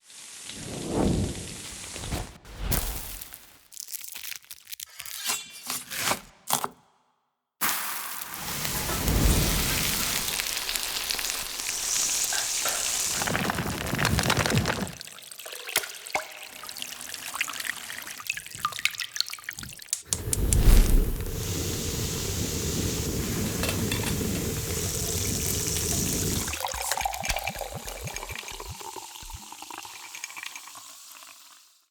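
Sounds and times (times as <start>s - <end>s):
food hissing in a pan: 0.0s - 3.5s, 7.6s - 14.1s, 20.2s - 27.1s.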